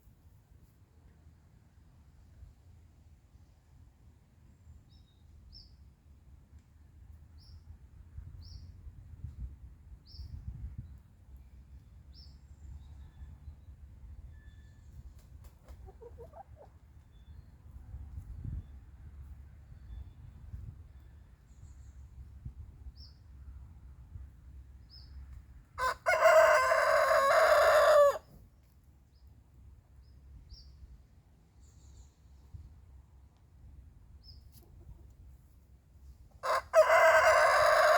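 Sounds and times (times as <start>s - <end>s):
rooster crowing: 25.8s - 28.2s, 36.4s - 37.9s.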